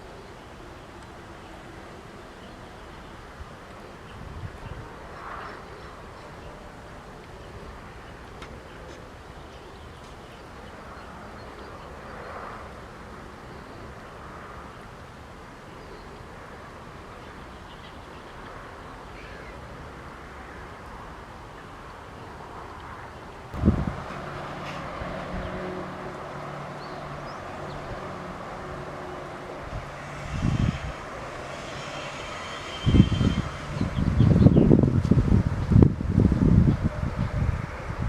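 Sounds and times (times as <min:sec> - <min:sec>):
low wind rumble: 0:00.0 - 0:38.0
distant bird calls: 0:15.6 - 0:34.8.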